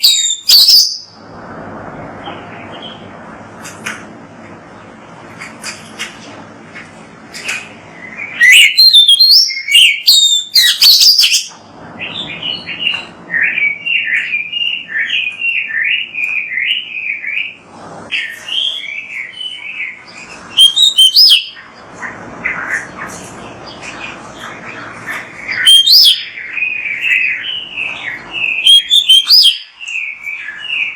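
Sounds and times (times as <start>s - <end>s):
songbird singing: 0.0s - 1.2s, 7.4s - 21.8s, 22.5s - 30.9s.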